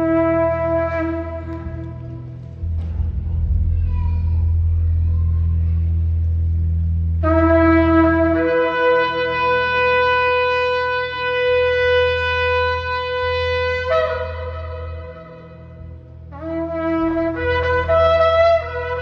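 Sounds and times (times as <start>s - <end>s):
shofar long note: 7.1s - 19.0s.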